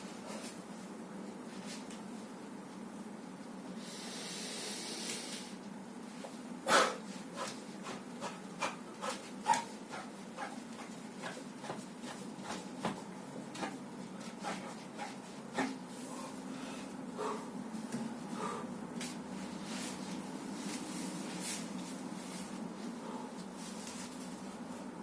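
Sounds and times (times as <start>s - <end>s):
steady low hum: 0.0s - 25.0s
short hiss: 3.9s - 5.6s.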